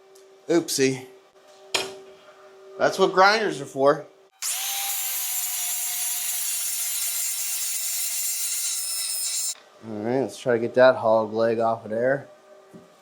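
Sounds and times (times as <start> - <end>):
angle grinder grinding steel: 4.4 - 9.6.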